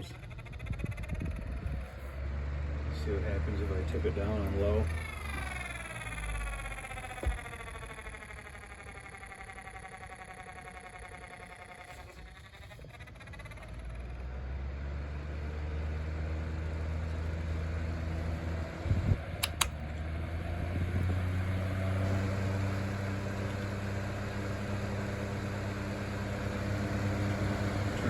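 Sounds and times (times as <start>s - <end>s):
fan motor humming: 0.0s - 28.0s
sharp clicks: 19.4s - 19.8s.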